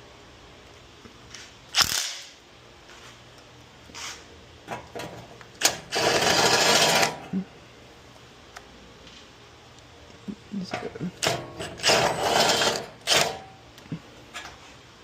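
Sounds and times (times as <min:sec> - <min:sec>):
cordless electric ratchet whirring: 0:05.6 - 0:07.1, 0:11.8 - 0:13.4.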